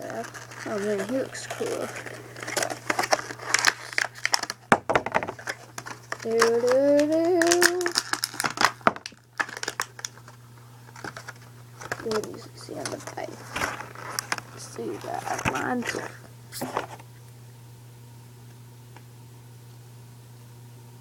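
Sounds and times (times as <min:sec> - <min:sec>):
toy packaging crinkling: 0:00.0 - 0:16.2
person humming: 0:06.2 - 0:08.0.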